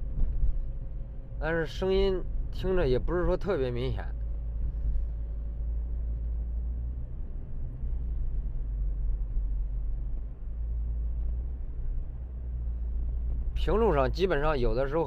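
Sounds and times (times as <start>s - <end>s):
car road and engine rumble: 0.0s - 15.0s.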